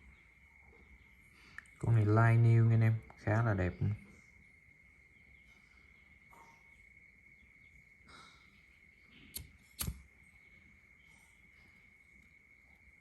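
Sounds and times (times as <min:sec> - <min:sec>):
gas lighter clicks: 0:09.4 - 0:10.0.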